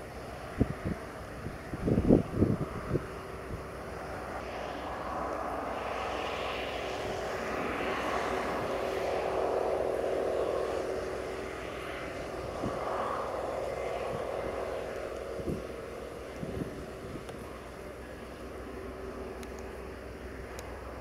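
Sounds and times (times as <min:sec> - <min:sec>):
combine harvester engine drone: 0:00.0 - 0:21.0.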